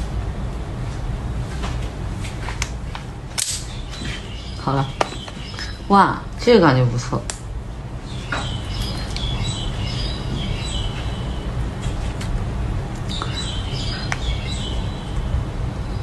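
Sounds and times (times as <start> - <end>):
steady low hum: 0.0 - 16.0
small birds chirping: 3.6 - 7.2, 7.9 - 12.2, 13.0 - 16.0.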